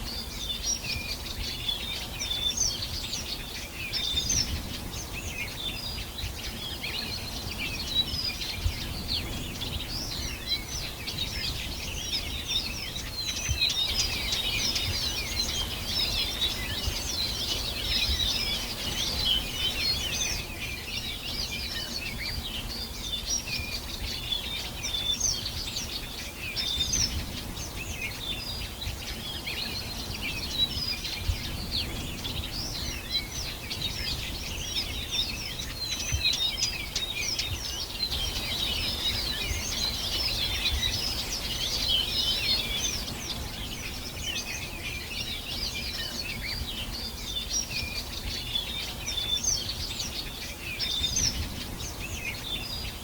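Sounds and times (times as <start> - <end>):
birds chirping in chorus: 0.0 - 53.0.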